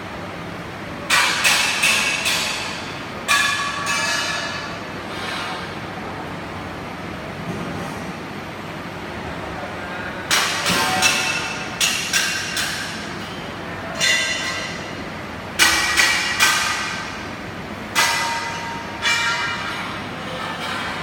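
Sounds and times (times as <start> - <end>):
hammer clanking on steel: 15.6 - 17.2, 17.9 - 21.0.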